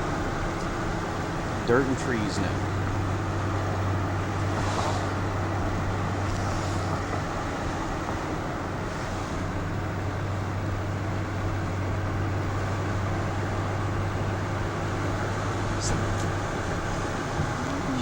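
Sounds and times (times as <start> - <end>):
car road and engine noise: 0.0 - 18.0
hissy swells: 4.4 - 5.4.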